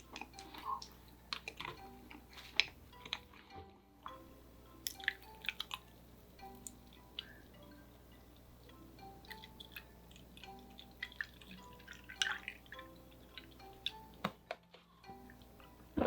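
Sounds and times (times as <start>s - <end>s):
chewing and mouth noises: 0.0s - 3.5s, 4.8s - 7.4s, 8.3s - 14.2s
soft chime-like music: 0.0s - 16.0s.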